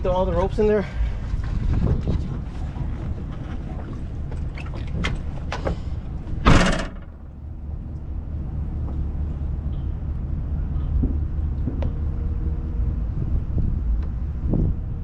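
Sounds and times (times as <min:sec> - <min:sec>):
vehicle engine idling: 0:02.6 - 0:09.2
knock and rattle: 0:02.8 - 0:07.4.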